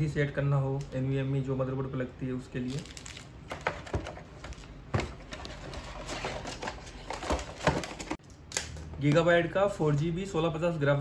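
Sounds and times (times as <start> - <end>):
cardboard and plastic rustling: 2.7 - 8.2.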